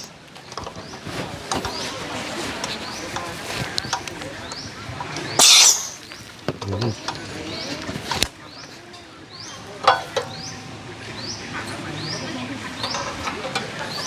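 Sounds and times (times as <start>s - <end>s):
high chirping call: 5.3s - 6.2s.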